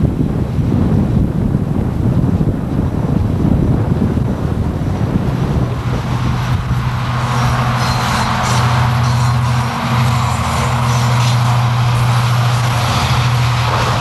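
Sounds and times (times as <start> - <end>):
low engine drone: 0.0 - 14.0
wind rumbling on microphone: 0.0 - 14.0
road or rail hiss: 5.6 - 14.0.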